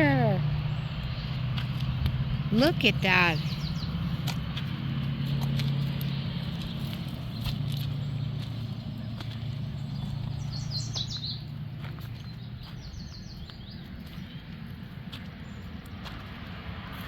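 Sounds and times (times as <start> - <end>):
low motor hum: 0.0 - 17.0
small bird chirping: 3.2 - 4.3, 5.8 - 14.6.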